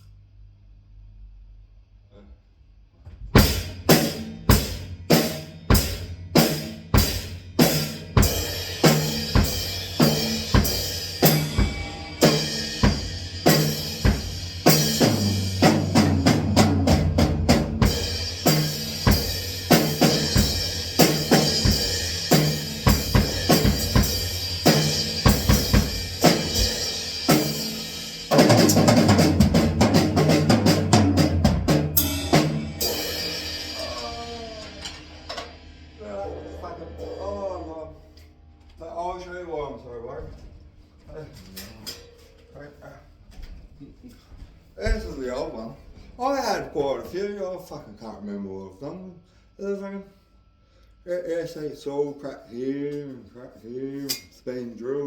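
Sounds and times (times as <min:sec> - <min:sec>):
drum kit playing: 0:03.3 - 0:38.2
cymbal crashing: 0:03.5 - 0:28.9, 0:31.8 - 0:38.2.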